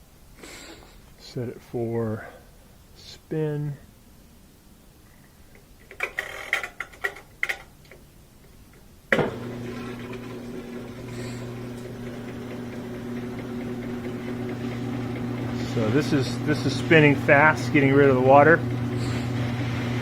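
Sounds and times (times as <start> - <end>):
washing machine motor humming: 9.1 - 20.0.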